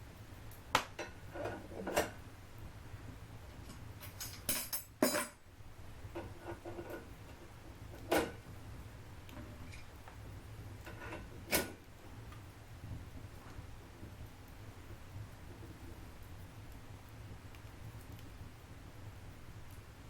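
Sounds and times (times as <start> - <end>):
steady low hum: 0.0 - 20.0
metal clinks and knocks: 4.0 - 5.4.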